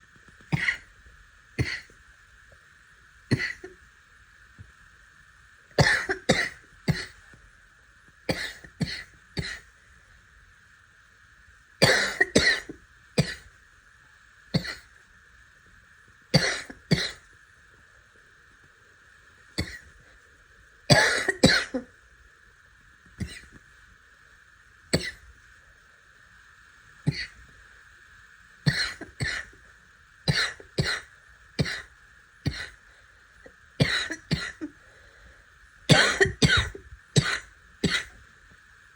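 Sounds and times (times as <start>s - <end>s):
person barking cough: 0.6s - 0.8s, 5.8s - 7.1s, 20.9s - 21.8s, 33.8s - 34.7s, 35.9s - 38.2s.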